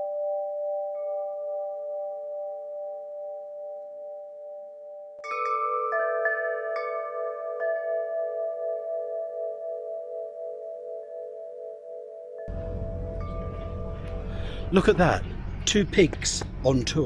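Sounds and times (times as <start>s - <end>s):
bell-like chimes ringing: 12.4s - 17.0s.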